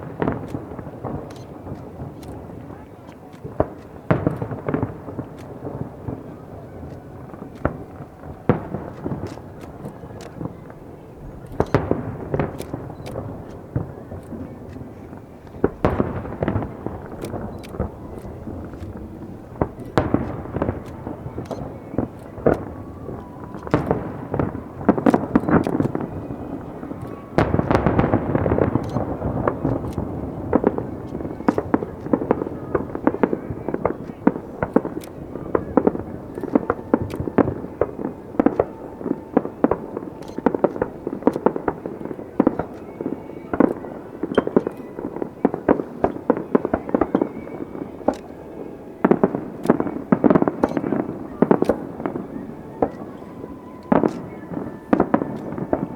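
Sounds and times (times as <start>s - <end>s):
fireworks bursts and crackling: 0.0s - 55.9s.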